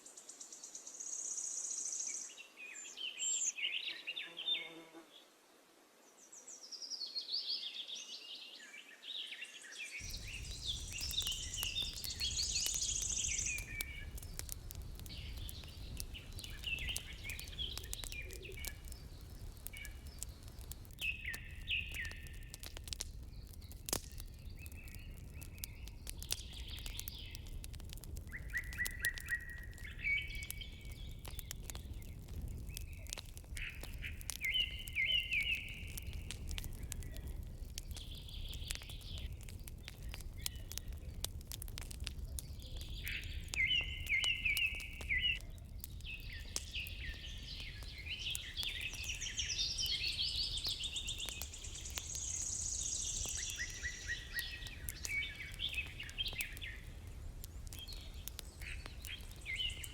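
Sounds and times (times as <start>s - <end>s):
songbirds trilling: 10.0s - 59.9s
sharp clicks or crackles: 10.1s - 34.6s.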